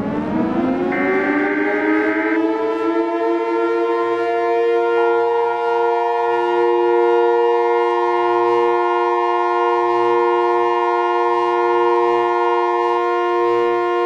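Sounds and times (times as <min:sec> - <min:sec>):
steady siren-like alarm tone: 0:00.0 - 0:04.6.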